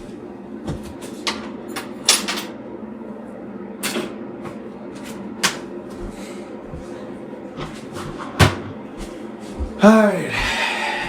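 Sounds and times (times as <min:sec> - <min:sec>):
steady low hum: 0:02.6 - 0:11.0.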